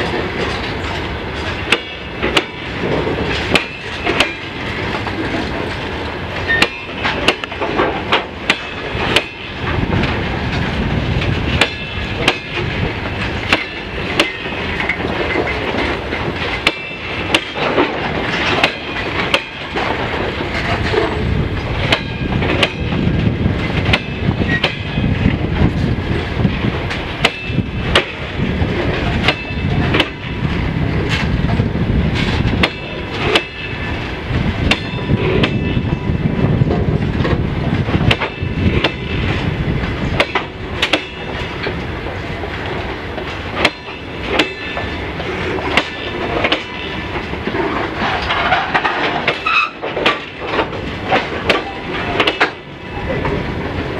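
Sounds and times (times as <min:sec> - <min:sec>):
freight train rumble: 0:00.0 - 0:53.9
train wheels clacking over rail joints: 0:00.0 - 0:53.9
faint high wheel squeal: 0:06.4 - 0:07.1, 0:49.4 - 0:49.8.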